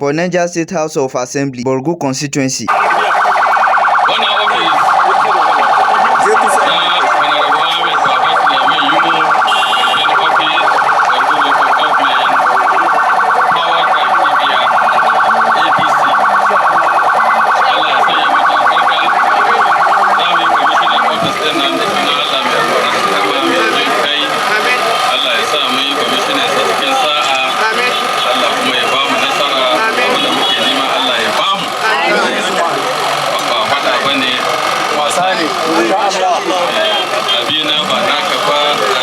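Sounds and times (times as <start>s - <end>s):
electronic siren warbling: 2.7s - 39.0s.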